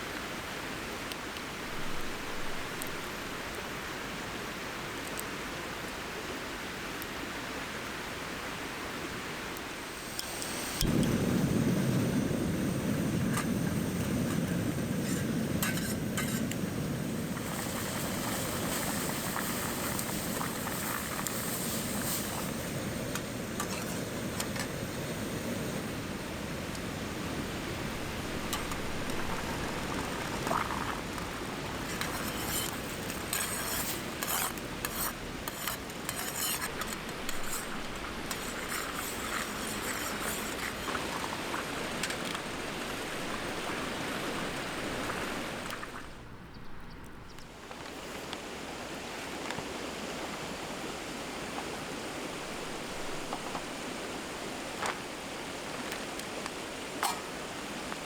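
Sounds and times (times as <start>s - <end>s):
food sizzling hiss: 0.0s - 4.3s, 9.0s - 46.4s, 47.5s - 58.0s
utensils clinking on cookware: 31.9s - 41.4s.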